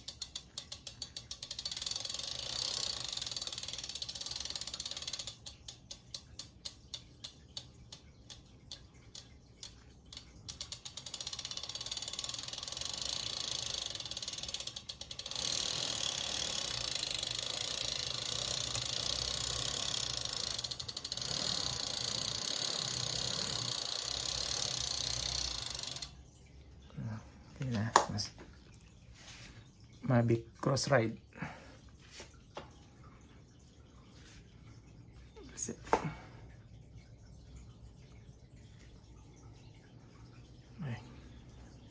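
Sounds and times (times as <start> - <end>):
bicycle freehub ticking: 0.0 - 26.2.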